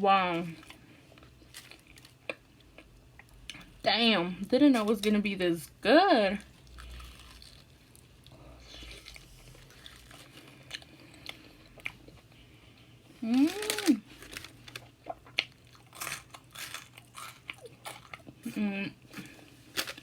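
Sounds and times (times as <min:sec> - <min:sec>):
person chewing crunchy food: 0:00.6 - 0:03.7, 0:06.4 - 0:20.0
person humming: 0:13.2 - 0:14.0.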